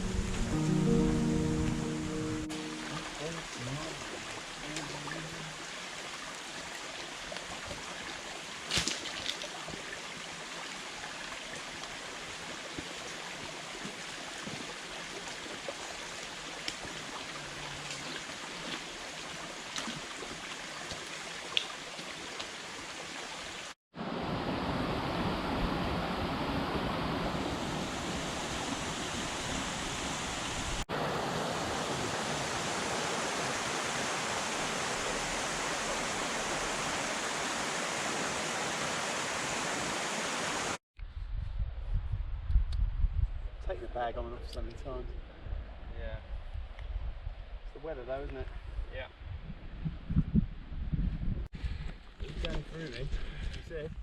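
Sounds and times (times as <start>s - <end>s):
stream running water: 0.0s - 40.8s.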